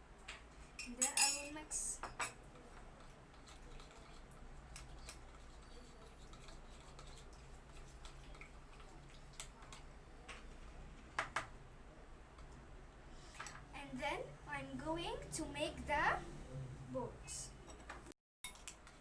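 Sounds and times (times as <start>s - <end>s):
spoon stirring glue: 2.3s - 10.4s.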